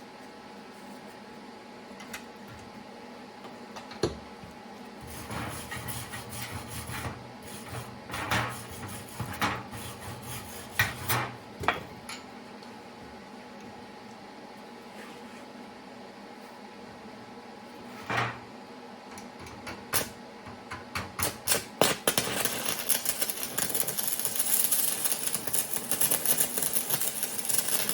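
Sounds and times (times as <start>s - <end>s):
welding arc crackling: 21.2s - 27.9s.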